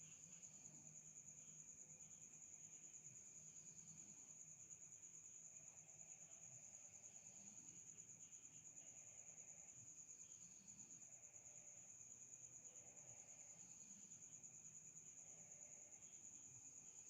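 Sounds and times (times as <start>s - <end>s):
cricket trilling: 0.0s - 17.0s.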